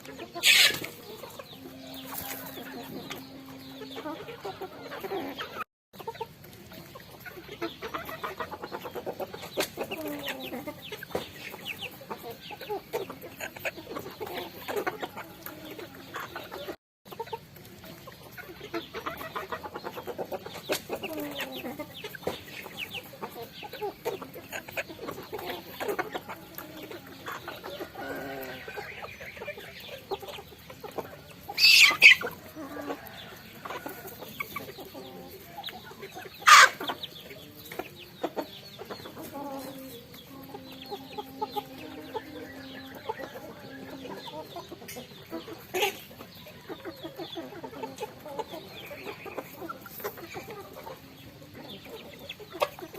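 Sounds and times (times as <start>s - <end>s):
chickens clucking softly: 0.0s - 52.9s
chicken squawks: 0.3s - 1.0s, 31.5s - 32.4s, 36.4s - 37.0s.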